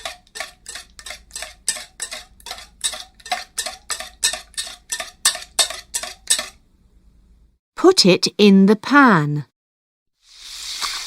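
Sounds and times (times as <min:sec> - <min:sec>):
utensil knocking against bowl: 0:00.0 - 0:06.6.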